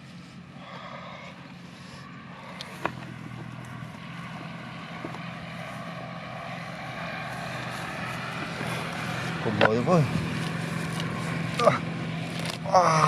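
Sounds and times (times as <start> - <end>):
engine running: 0.0 - 13.0.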